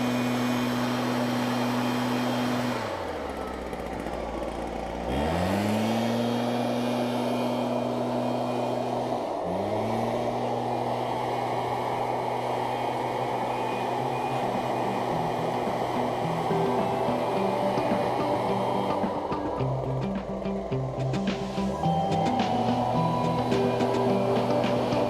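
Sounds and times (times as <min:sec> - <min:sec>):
engine idling and revving: 0:00.0 - 0:25.0.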